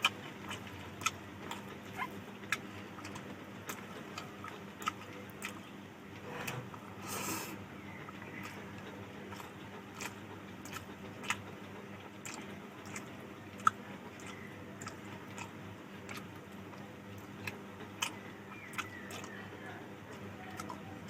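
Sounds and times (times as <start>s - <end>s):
chewing with mouth smacks: 0.0s - 5.7s, 7.8s - 21.0s.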